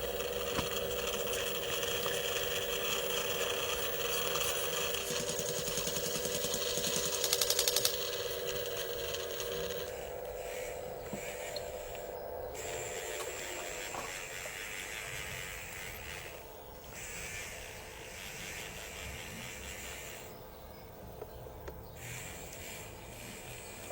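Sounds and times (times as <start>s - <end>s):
hydraulic pump whine: 0.0s - 14.6s.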